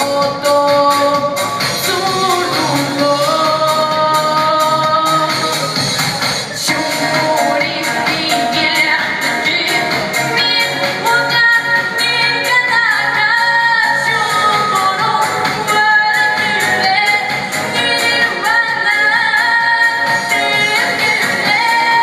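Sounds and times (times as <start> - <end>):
girl singing: 0.0 - 5.4, 6.6 - 22.0
instrumental backing with beat: 0.0 - 22.0.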